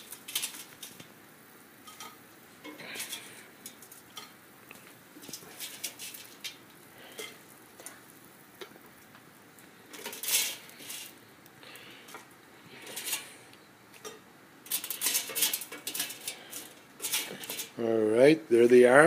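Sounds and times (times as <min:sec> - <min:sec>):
cutlery clinking on a plate: 0:01.9 - 0:03.3.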